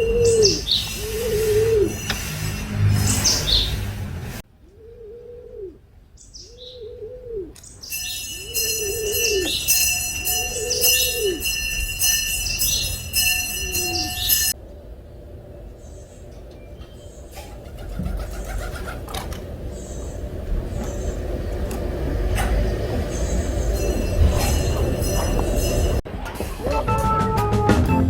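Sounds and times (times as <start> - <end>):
doves cooing: 0.0 - 2.1, 4.7 - 5.8, 6.6 - 7.6, 17.3 - 19.6
small birds chirping: 0.0 - 2.1, 6.2 - 7.0, 15.4 - 19.0, 19.6 - 21.7, 22.5 - 24.0.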